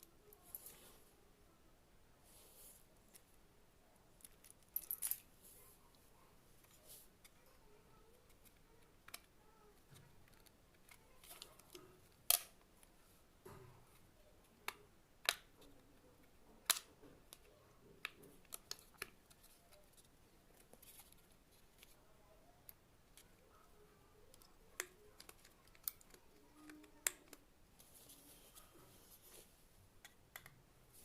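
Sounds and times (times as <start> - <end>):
sharp clicks and taps of tools: 30.0 - 30.6.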